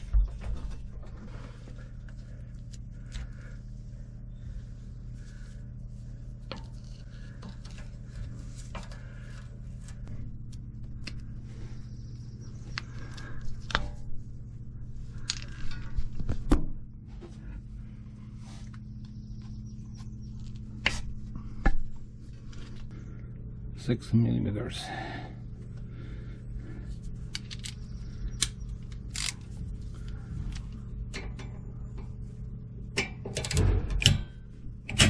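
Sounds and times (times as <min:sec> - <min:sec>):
steady low hum: 0:00.0 - 0:35.0
tools scraping and clicking: 0:27.3 - 0:27.8.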